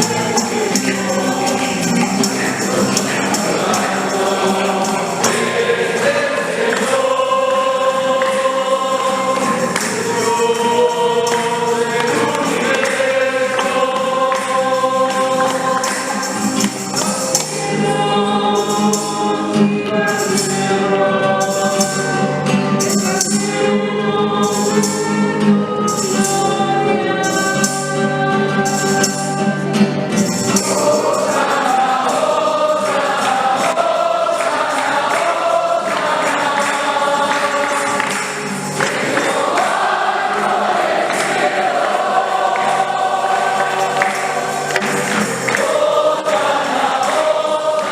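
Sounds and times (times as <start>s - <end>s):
high percussion beat: 0.0s - 19.3s, 30.2s - 47.9s
choir singing a hymn: 0.0s - 47.9s.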